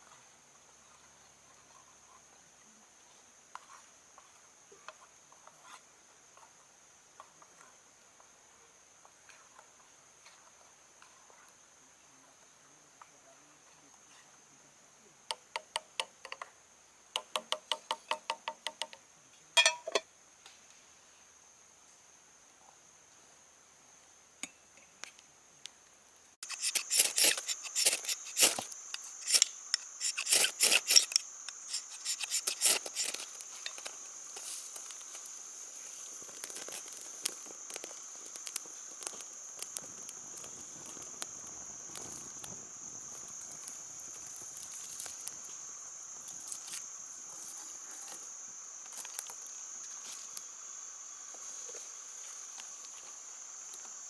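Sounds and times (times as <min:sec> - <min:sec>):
insects droning: 0:00.0 - 0:54.0
sharp crackles and clicks: 0:26.4 - 0:35.2.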